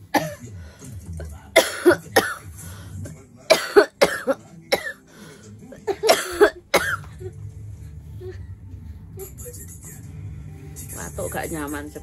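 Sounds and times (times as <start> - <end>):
woman coughing: 0.1 - 0.5, 1.6 - 2.4, 3.5 - 5.0, 5.8 - 7.3.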